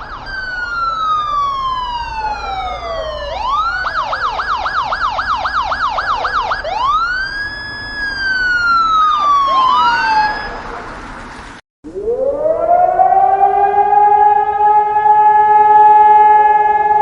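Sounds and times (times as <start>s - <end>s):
electronic emergency siren: 0.0s - 10.9s, 11.8s - 17.0s.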